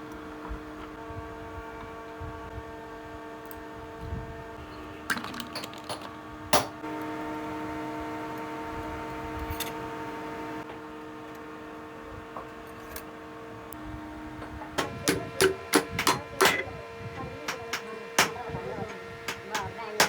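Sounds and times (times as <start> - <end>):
steady hum: 6.1 - 20.0.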